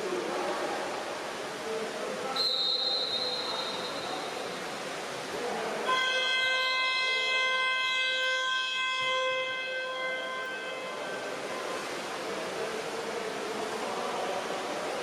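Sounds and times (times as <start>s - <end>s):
pool hall hiss: 0.0s - 15.0s.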